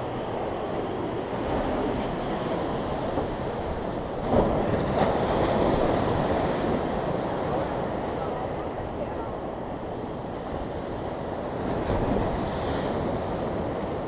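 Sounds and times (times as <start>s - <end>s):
ocean surf: 0.0s - 14.0s
wind: 0.0s - 14.0s
wind buffeting microphone: 0.0s - 14.0s.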